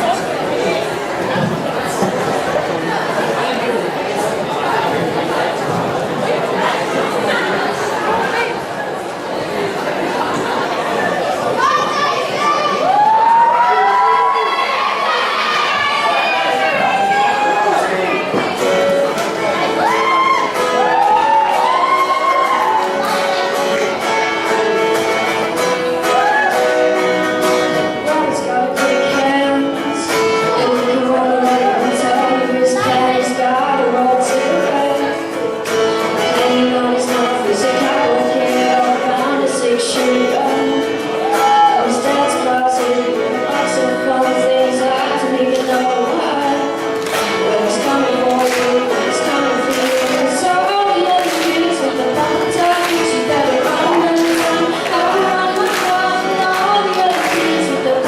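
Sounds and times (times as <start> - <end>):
person singing with instruments: 13.0 - 58.0.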